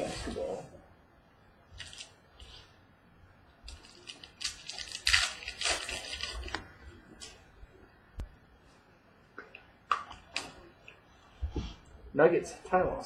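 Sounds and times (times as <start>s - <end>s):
packaging crinkling and tearing: 1.8s - 2.2s, 3.7s - 7.4s.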